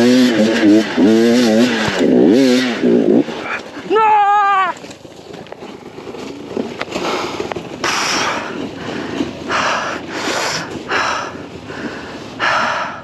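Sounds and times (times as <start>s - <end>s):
person breathing hard: 7.0s - 13.0s.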